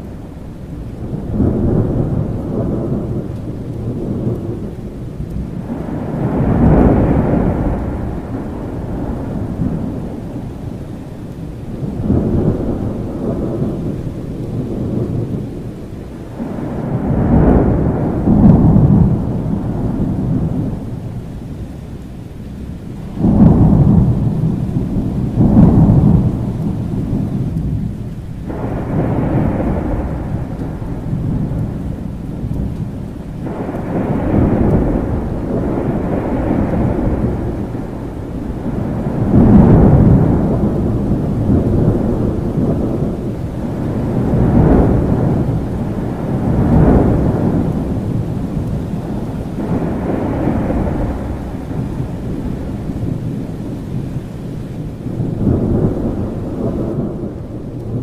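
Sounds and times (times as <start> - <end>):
rolling thunder: 0.0 - 58.0
steady rain: 0.0 - 58.0.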